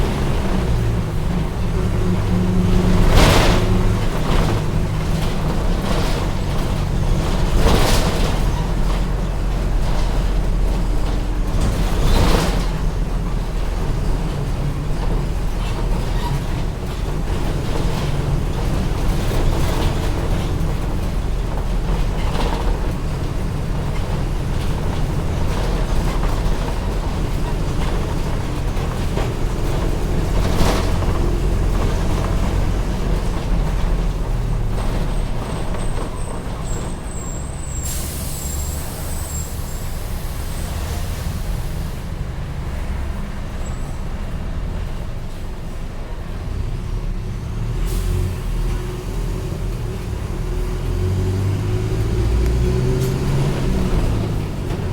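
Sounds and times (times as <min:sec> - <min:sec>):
sharp knocks and rattles: 0:00.0 - 0:37.3
bus engine rumble: 0:00.0 - 0:54.9.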